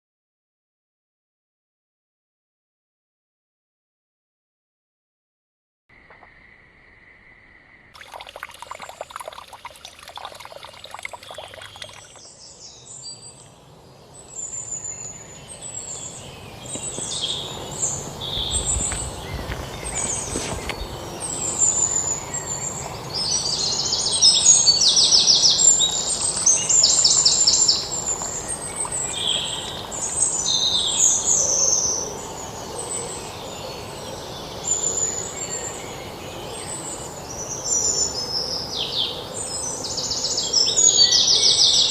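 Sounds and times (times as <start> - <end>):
outdoor background noise: 5.9 - 41.9
birds chirping and trilling: 6.1 - 41.9
dense trickling or crackling: 8.0 - 12.2.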